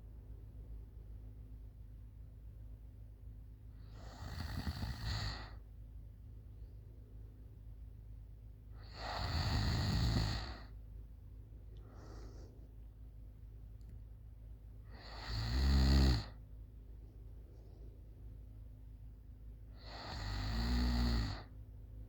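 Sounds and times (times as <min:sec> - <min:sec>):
girl snoring: 0:03.9 - 0:05.6, 0:08.8 - 0:10.7, 0:14.9 - 0:16.3, 0:19.8 - 0:21.5.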